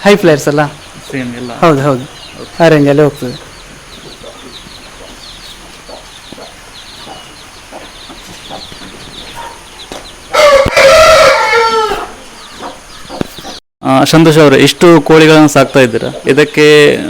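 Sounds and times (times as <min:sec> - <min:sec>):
small birds chirping: 0:00.0 - 0:17.0
rooster crowing: 0:09.4 - 0:12.7.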